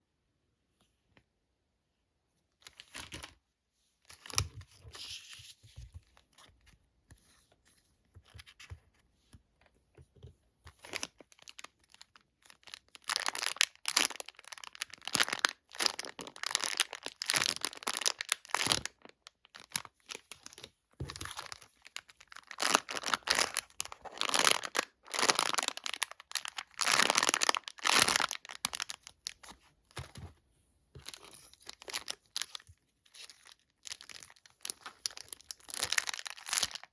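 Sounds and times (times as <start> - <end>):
plastic packaging crinkling and tearing: 10.8 - 29.6, 31.0 - 36.9.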